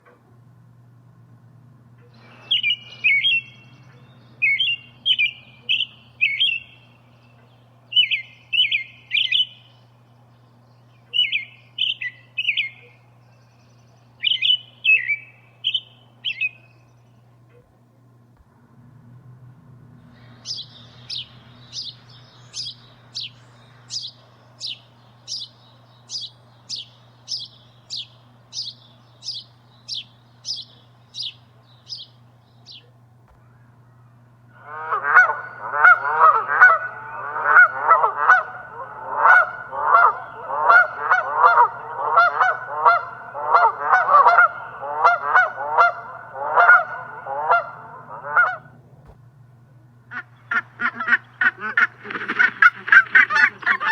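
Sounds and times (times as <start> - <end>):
flock of geese calling: 2.0 - 6.9, 20.2 - 32.1, 34.6 - 48.8, 50.1 - 53.9
small bird calling: 2.0 - 17.7, 20.0 - 49.2, 50.1 - 53.9.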